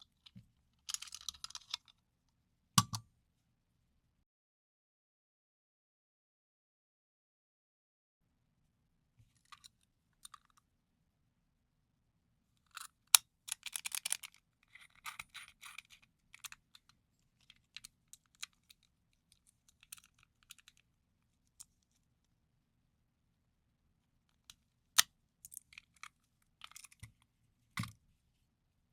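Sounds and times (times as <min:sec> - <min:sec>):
padlock clicking and rattling: 0:00.9 - 0:01.9, 0:13.5 - 0:16.9.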